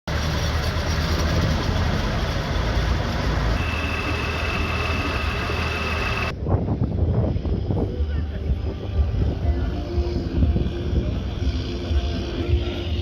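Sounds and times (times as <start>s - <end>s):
tractor engines rumbling: 0.0s - 6.3s
high-pitched whine: 3.6s - 6.4s.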